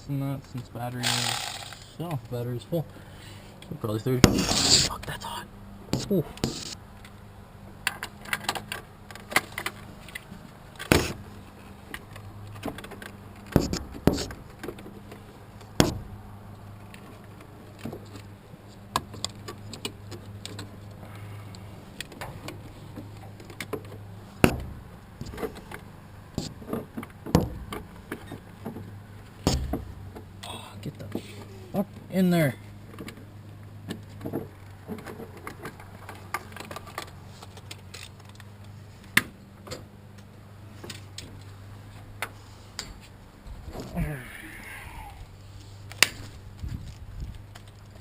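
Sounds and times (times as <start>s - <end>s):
ratchet clicking: 1.0s - 1.9s
steady low hum: 9.7s - 35.0s.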